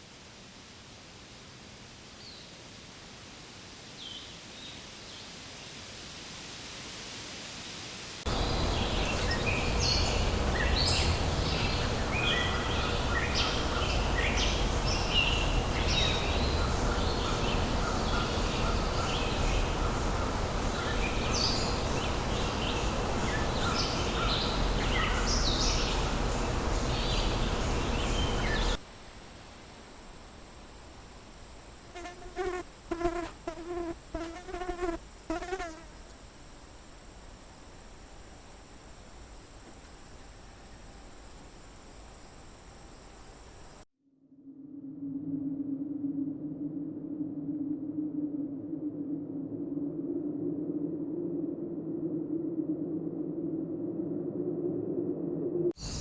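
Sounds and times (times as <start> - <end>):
faint hiss: 0.0 - 43.8, 55.8 - 56.0.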